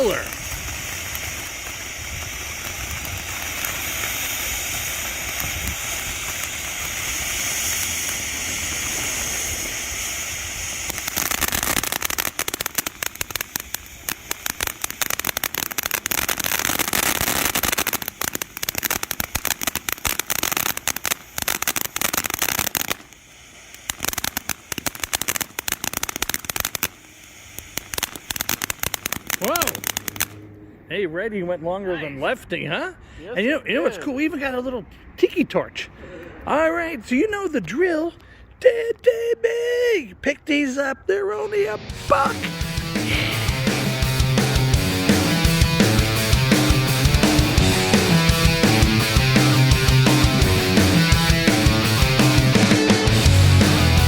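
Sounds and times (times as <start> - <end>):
firework fountain hissing: 0.0 - 30.4, 41.4 - 54.0
firework rapid crackling: 0.0 - 30.4, 40.5 - 54.0.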